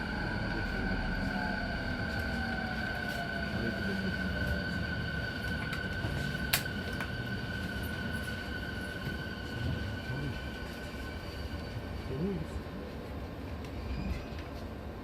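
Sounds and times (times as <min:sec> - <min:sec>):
low train rumble: 0:00.0 - 0:15.0.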